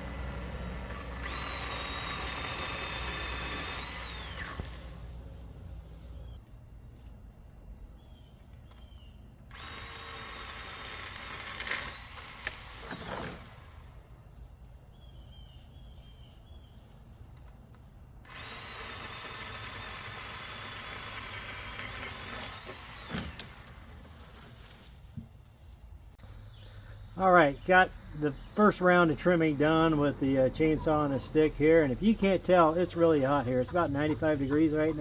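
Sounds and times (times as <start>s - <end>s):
chainsaw whine: 0.0s - 6.4s, 9.4s - 14.1s, 18.2s - 24.9s, 26.3s - 35.0s.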